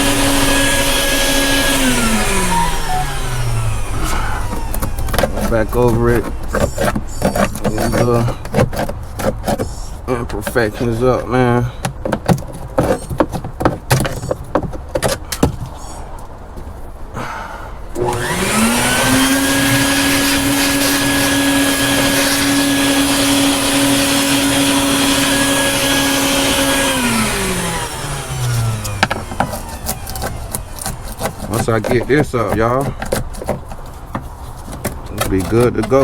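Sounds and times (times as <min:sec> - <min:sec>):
vacuum cleaner motor whine: 0:00.0 - 0:08.4, 0:17.9 - 0:31.7
screwdriver scraping paint: 0:00.0 - 0:16.0, 0:18.0 - 0:36.0.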